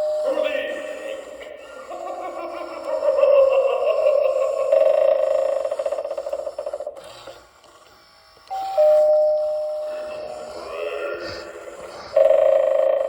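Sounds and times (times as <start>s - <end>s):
two-note doorbell chime: 8.5s - 9.9s.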